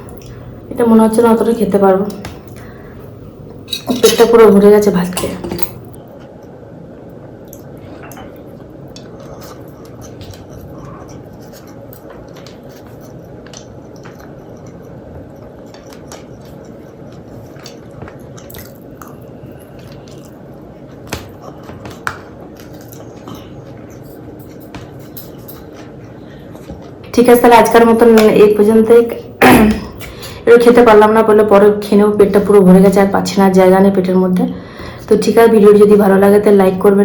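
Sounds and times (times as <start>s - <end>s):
close chewing with mouth clicks: 7.4s - 27.1s.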